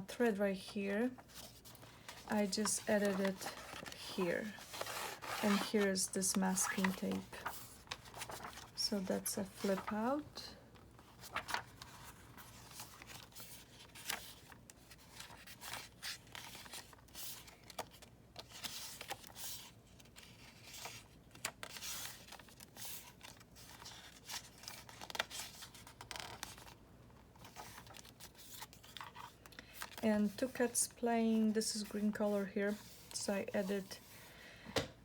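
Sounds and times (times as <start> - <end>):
paper pages rustling: 1.1 - 30.7, 31.5 - 34.3.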